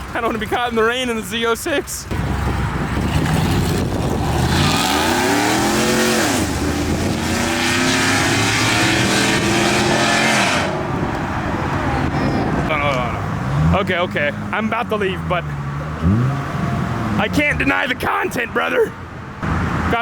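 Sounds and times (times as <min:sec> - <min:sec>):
car engine revving: 0:02.1 - 0:17.9.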